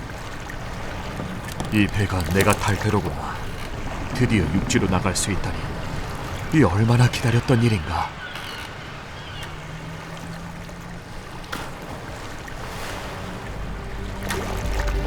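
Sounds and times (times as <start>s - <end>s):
waves washing around boat: 0.0s - 15.0s
faint knocks: 0.6s - 6.6s.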